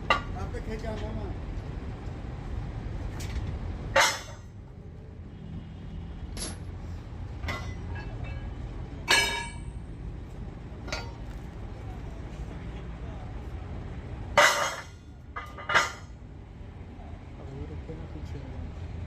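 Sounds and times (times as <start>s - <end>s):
metal track chain clanking: 3.2s - 4.6s, 6.3s - 6.8s, 7.4s - 9.8s, 14.4s - 16.2s.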